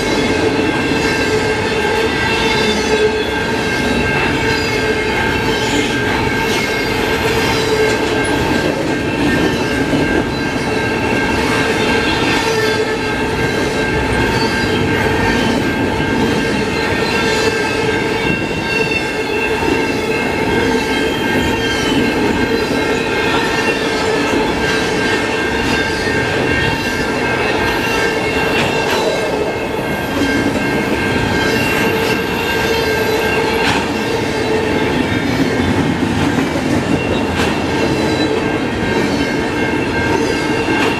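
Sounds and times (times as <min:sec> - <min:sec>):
high metallic wheel squeal: 0:00.0 - 0:35.7
train wheels rumbling on rail: 0:00.0 - 0:40.9
clicking at rail joints: 0:30.0 - 0:34.0, 0:35.0 - 0:38.4.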